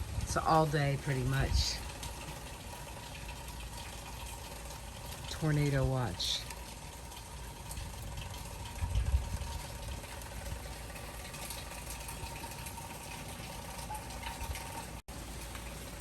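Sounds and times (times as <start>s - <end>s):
wind gust buffeting microphone: 0.0s - 1.8s, 7.9s - 10.6s
rain: 0.0s - 16.0s.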